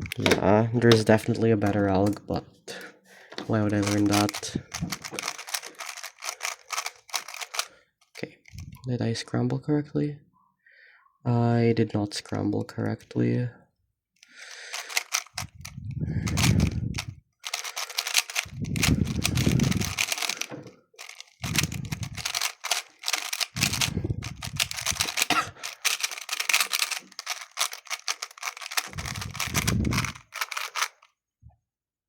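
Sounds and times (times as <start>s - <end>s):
rapid plastic clicking of puzzle cube: 3.3s - 8.7s, 14.2s - 31.1s
heavy breaths on microphone: 14.3s - 26.1s.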